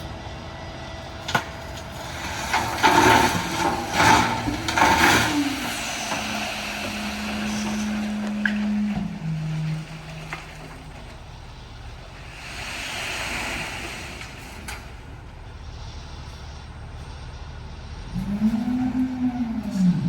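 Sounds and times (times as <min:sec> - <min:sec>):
truck engine humming: 0:00.0 - 0:20.0.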